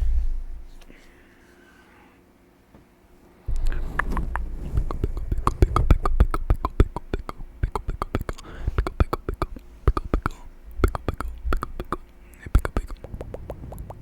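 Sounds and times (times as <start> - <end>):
low rumble of breath: 0.0 - 2.2, 3.5 - 6.8, 8.3 - 8.8, 9.6 - 14.0
wet mouth clicks and pops: 4.0 - 14.0.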